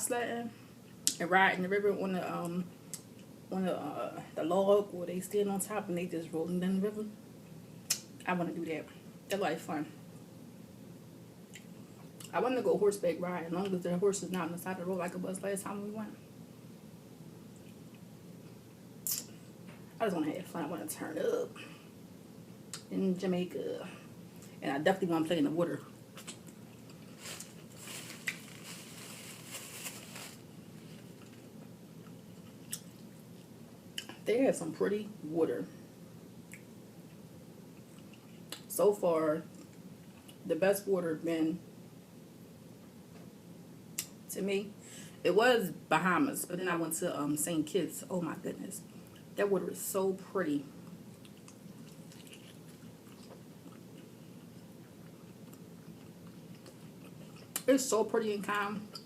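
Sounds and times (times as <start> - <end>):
faint chewing: 26.1 - 29.7, 30.7 - 34.2, 36.5 - 38.6, 50.8 - 57.7
chewing fried chicken: 50.8 - 57.7.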